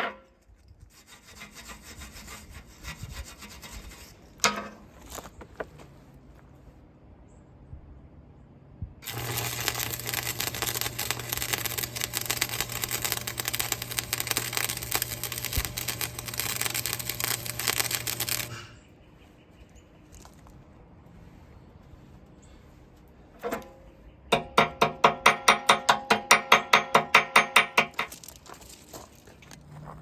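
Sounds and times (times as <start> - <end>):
welding arc crackling: 9.0 - 18.6.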